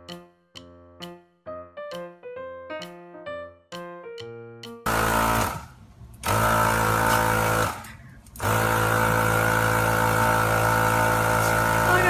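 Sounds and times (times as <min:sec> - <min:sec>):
piano notes: 0:00.0 - 0:05.2
small motor humming: 0:04.9 - 0:12.0.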